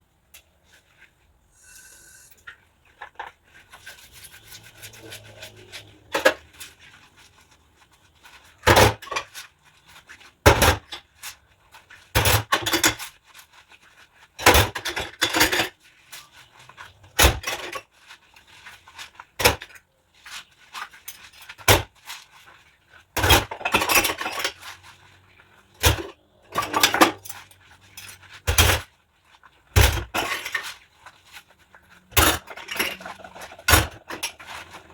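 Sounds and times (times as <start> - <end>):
dishes and cutlery clattering: 4.9 - 6.7, 14.4 - 15.8, 17.1 - 17.9, 23.2 - 24.8, 25.8 - 28.9, 29.8 - 30.8, 32.1 - 34.9.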